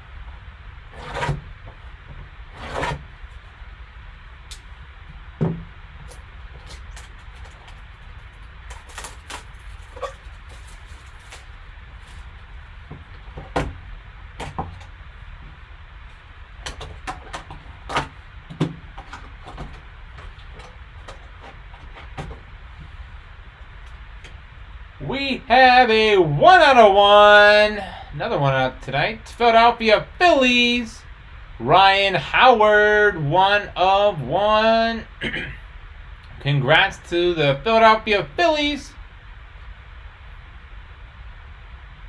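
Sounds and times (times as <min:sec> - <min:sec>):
cardboard and plastic rustling: 0:00.0 - 0:24.6
steady low hum: 0:00.0 - 0:42.0.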